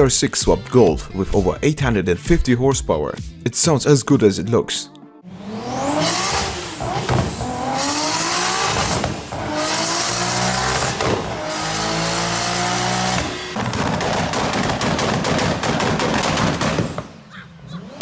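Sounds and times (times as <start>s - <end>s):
car engine accelerating: 5.2s - 18.0s.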